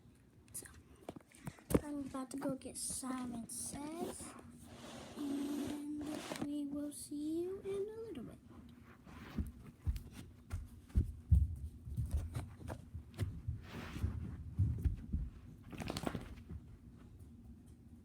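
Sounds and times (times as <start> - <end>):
dull thumps and knocks: 9.3 - 16.7.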